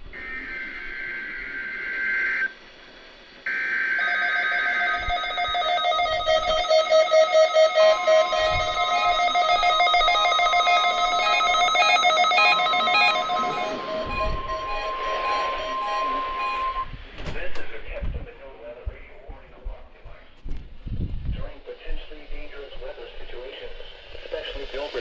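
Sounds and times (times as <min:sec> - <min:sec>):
buzzing warbling data bursts: 0:03.5 - 0:16.9
electronic beeping and chiming alerts: 0:04.0 - 0:16.9
steady alert tone: 0:04.0 - 0:16.9.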